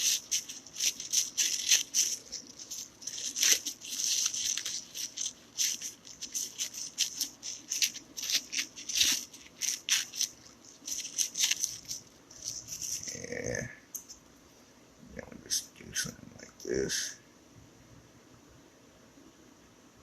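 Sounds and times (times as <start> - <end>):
wipe scrubbing scratchy strokes: 0.0 - 13.2.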